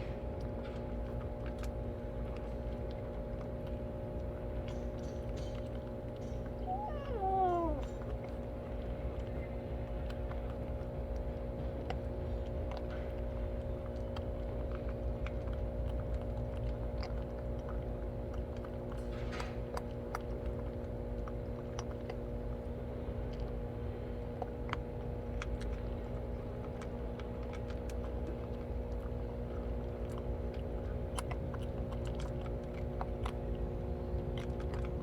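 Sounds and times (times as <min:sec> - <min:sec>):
mechanical hum: 0:00.0 - 0:35.0
cat meowing: 0:06.6 - 0:08.0.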